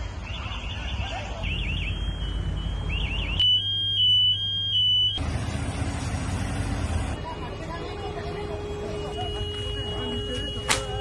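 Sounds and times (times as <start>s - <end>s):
electronic alarm chirping warble: 0.2s - 5.2s
long high alarm beeps: 0.4s - 5.2s, 7.8s - 11.0s.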